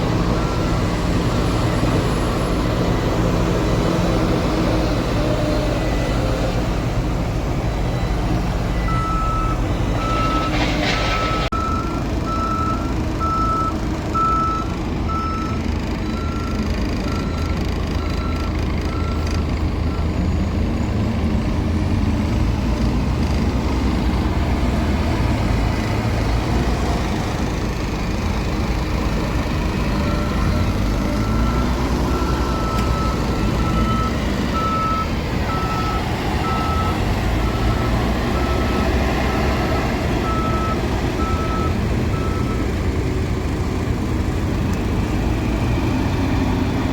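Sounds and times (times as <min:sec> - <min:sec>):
diesel engine running: 0:00.0 - 0:46.9
reversing alarm beeping: 0:00.2 - 0:03.3, 0:07.7 - 0:20.3, 0:29.8 - 0:39.4, 0:40.2 - 0:42.7.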